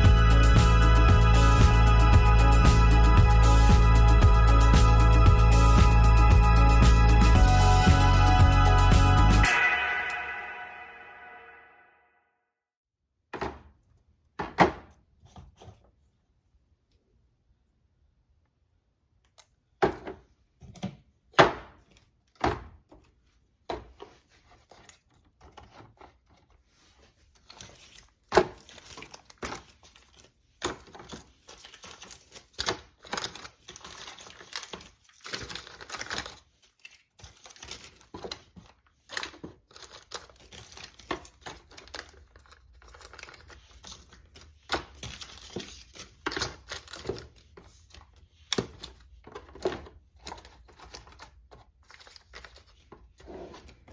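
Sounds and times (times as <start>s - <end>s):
plastic packaging crinkling: 24.2s - 53.9s.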